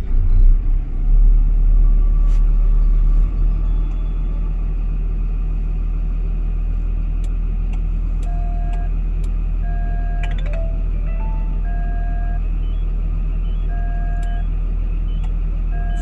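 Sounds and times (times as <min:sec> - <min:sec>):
diesel engine idling: 0:00.0 - 0:16.0
short electronic beeps: 0:09.7 - 0:14.5, 0:15.1 - 0:16.0.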